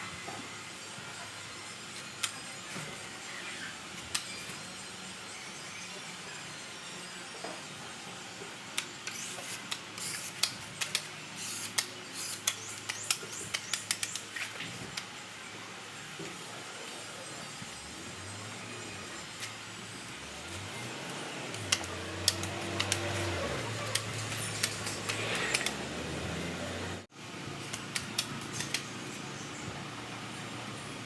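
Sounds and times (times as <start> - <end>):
spreader clicks: 21.5 - 25.8.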